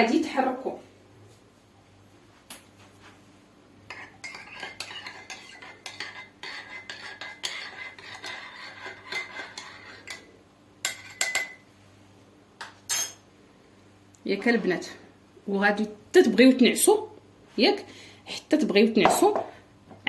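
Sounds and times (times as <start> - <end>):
spoon clinking in a glass: 10.9 - 11.6.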